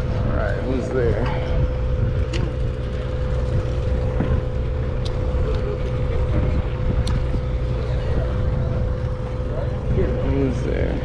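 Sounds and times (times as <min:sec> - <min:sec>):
boat engine rumbling: 0:00.0 - 0:11.0.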